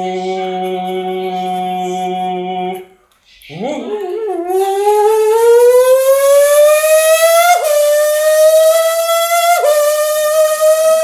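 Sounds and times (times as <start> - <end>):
mouth imitating racing engine: 3.5 - 11.0.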